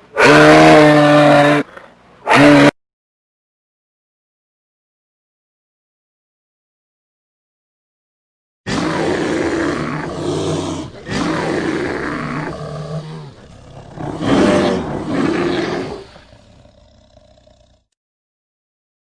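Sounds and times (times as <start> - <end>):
large animal roaring: 0.2 - 2.7, 8.7 - 17.9.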